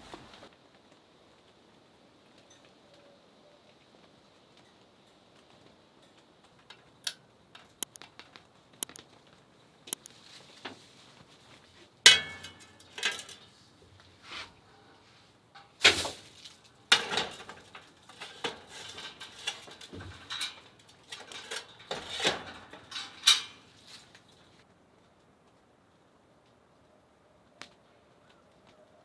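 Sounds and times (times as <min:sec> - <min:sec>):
cookware and cutlery clattering: 0:12.1 - 0:13.5, 0:15.6 - 0:24.1.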